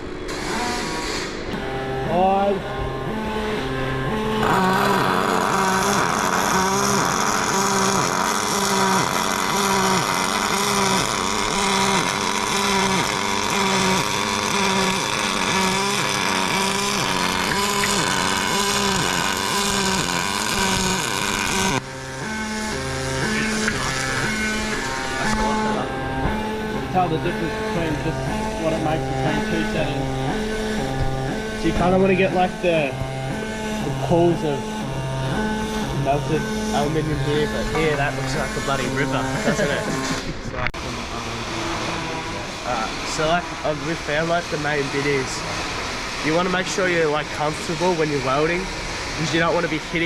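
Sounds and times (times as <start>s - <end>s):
welding arc crackling hiss: 4.4s - 21.8s.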